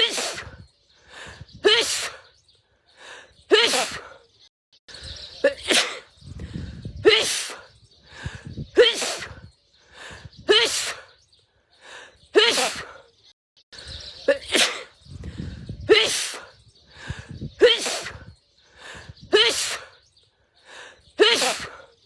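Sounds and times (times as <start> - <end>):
woman sneezing: 12.4 - 12.9, 21.2 - 21.7.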